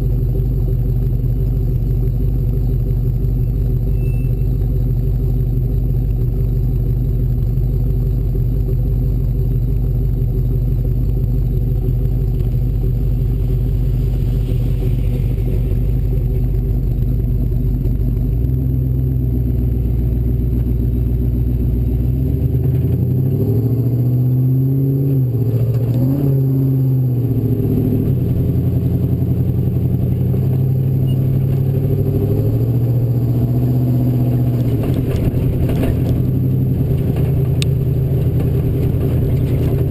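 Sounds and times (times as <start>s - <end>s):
engine revving: 12.4s - 17.6s, 18.2s - 39.9s.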